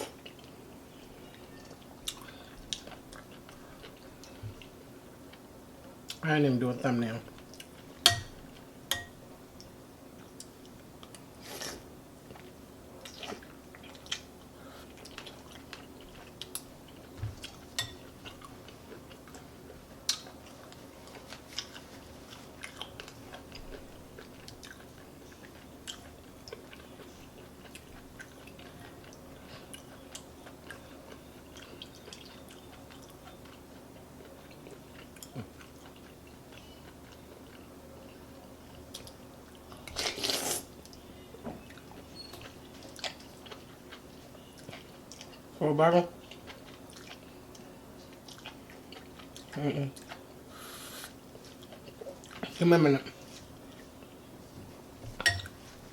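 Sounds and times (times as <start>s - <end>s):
close-up chewing mouth sounds: 12.3s - 37.7s, 41.7s - 45.5s, 46.2s - 52.6s.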